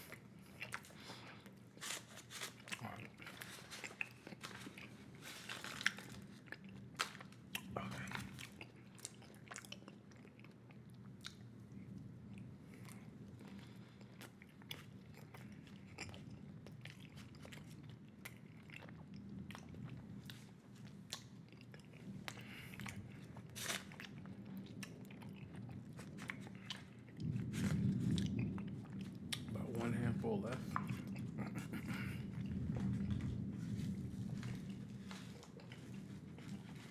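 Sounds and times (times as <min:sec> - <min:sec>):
steady low hum: 0:00.0 - 0:36.9
low rumble: 0:27.0 - 0:36.9.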